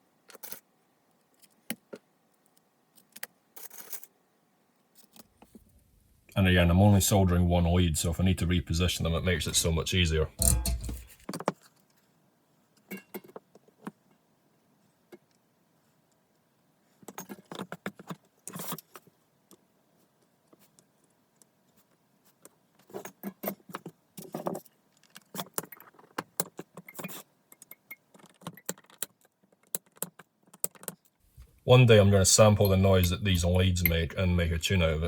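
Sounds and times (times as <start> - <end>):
wire leads clicking and jingling: 10.3 - 11.2, 26.8 - 34.1.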